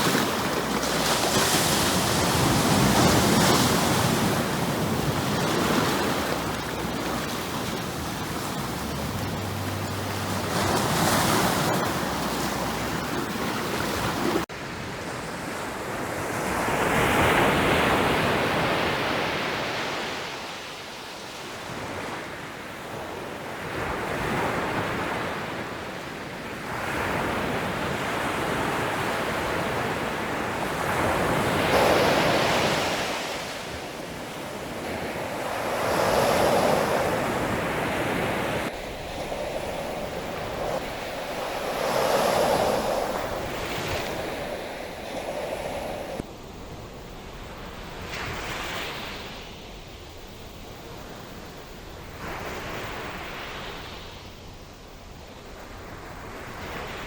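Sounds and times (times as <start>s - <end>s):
ocean waves breaking: 0.0s - 14.5s, 26.7s - 46.3s.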